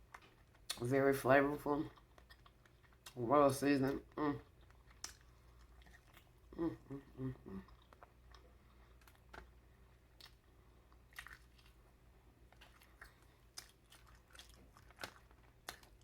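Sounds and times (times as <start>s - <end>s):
close chewing of meat: 0.0s - 16.0s.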